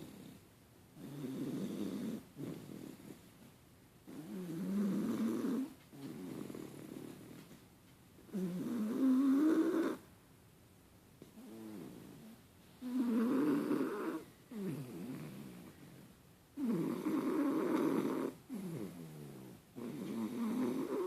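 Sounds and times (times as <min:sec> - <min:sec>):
loud snoring: 0:01.0 - 0:03.2, 0:04.1 - 0:07.3, 0:08.3 - 0:10.0, 0:11.4 - 0:16.0, 0:16.6 - 0:21.0.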